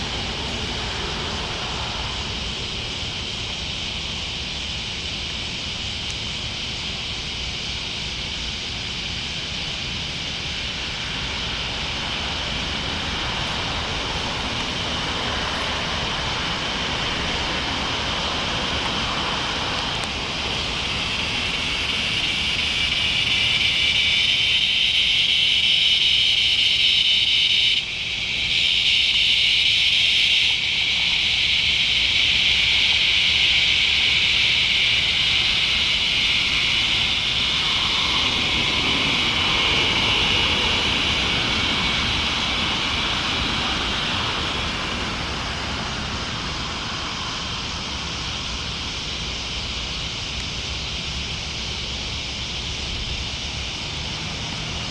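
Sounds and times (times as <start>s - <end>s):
cicadas buzzing: 0.0s - 54.9s.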